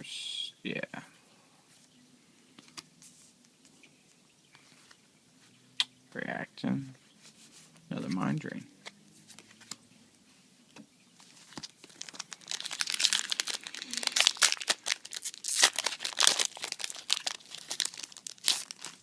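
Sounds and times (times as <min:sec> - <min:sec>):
foil pack tearing and crinkling: 0:11.5 - 0:19.0.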